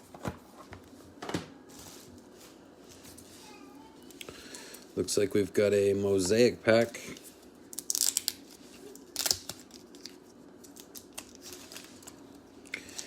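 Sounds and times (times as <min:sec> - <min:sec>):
foil wrapper tearing and crinkling: 0:07.7 - 0:12.2.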